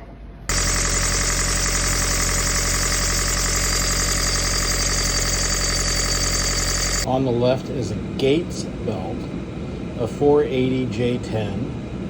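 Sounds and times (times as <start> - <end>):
alternator belt squealing: 0.5 - 7.1
boat engine running: 0.5 - 7.1.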